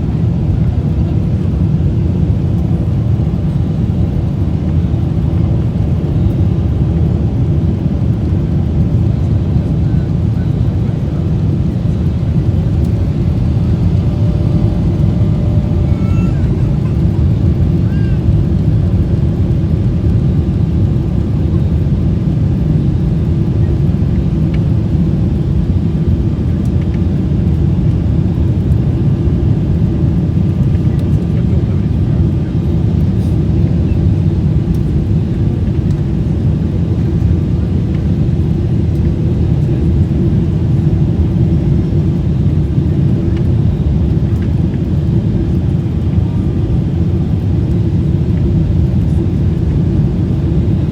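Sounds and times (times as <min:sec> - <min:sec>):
faint engine tones: 0:00.0 - 0:27.0, 0:41.4 - 0:50.9
engine and airflow rumble: 0:00.0 - 0:50.9.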